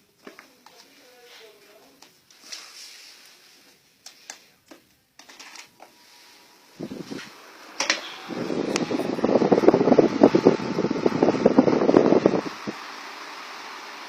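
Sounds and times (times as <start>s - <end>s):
table fan blowing: 5.8s - 14.0s.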